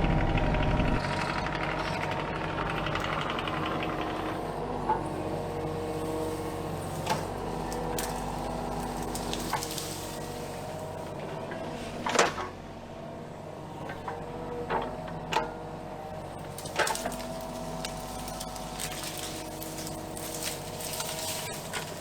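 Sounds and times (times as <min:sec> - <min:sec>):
excavator diesel engine running: 0:00.0 - 0:22.0
wood snapping: 0:07.0 - 0:10.9, 0:16.4 - 0:22.0.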